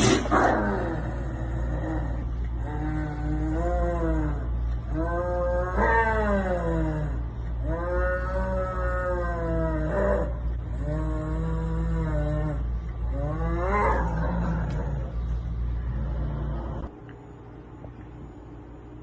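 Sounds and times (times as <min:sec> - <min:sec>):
steady low hum: 0:00.0 - 0:19.0.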